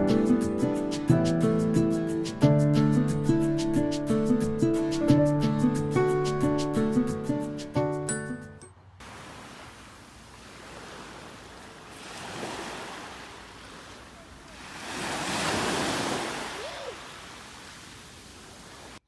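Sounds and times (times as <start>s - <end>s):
ocean surf washing on beach: 9.0s - 19.0s.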